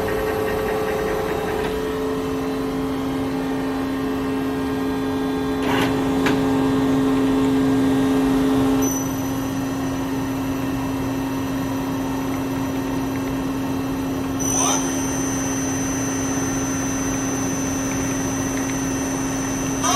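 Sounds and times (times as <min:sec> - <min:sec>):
machine hum: 0:00.0 - 0:19.9
faint high whine: 0:14.4 - 0:19.9.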